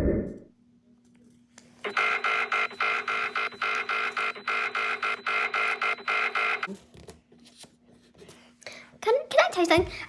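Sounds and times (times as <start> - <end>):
electronic alarm beeping: 1.8 - 6.7.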